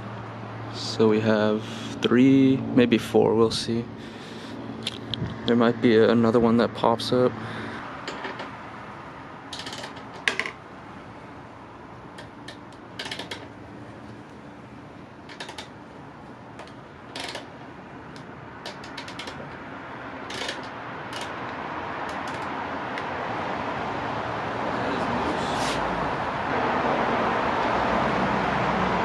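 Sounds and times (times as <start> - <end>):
socket ratchet clicking: 9.5 - 10.6, 12.2 - 13.5, 15.3 - 15.7, 16.6 - 17.5, 18.1 - 19.6, 20.2 - 23.1.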